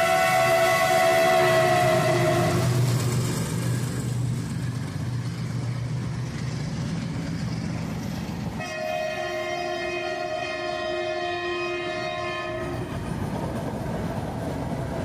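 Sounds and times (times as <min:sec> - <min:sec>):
locomotive horn blast: 0:00.0 - 0:02.8, 0:08.6 - 0:12.9
rail noise: 0:00.0 - 0:15.0.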